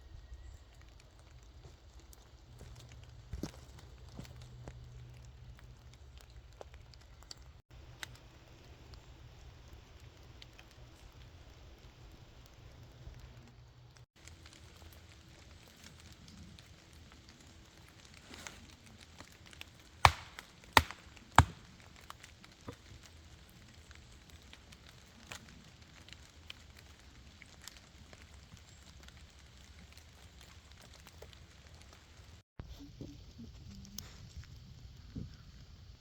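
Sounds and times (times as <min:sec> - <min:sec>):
light rain patter: 0:00.0 - 0:36.0
campfire crackling: 0:00.1 - 0:32.4, 0:33.4 - 0:36.0
wood being chopped: 0:20.0 - 0:21.7.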